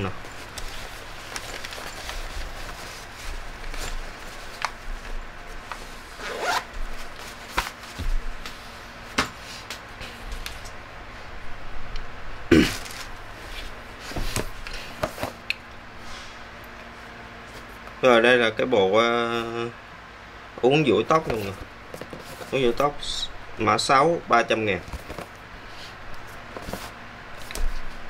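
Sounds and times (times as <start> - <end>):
bag zipper being pulled: 6.2 - 6.7.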